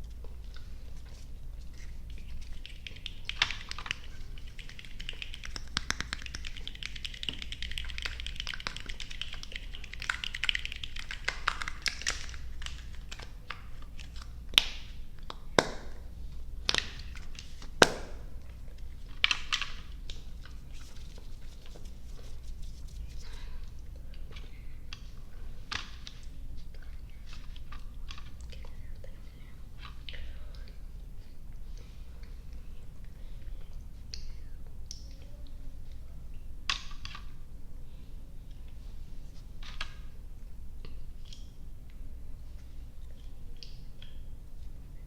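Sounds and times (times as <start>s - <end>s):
chewing sticky candy: 0.0s - 36.0s
mouth clicks and smacks: 0.2s - 31.1s, 40.8s - 42.0s.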